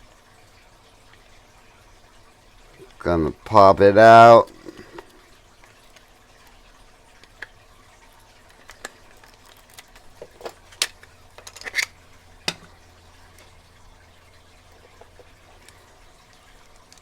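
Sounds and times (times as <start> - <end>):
lock and pick clicking: 9.8 - 13.5.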